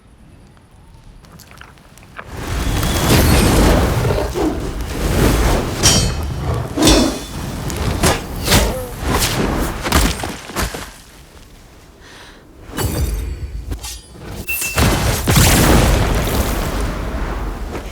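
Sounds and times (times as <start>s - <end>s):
whooshes: 2.2s - 9.9s
sharp hits: 4.8s - 10.2s.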